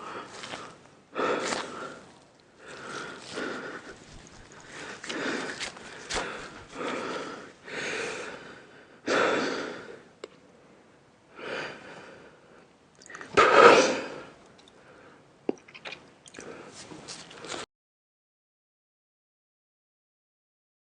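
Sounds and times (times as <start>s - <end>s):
man breathing hard: 0.0s - 10.1s, 11.3s - 12.7s.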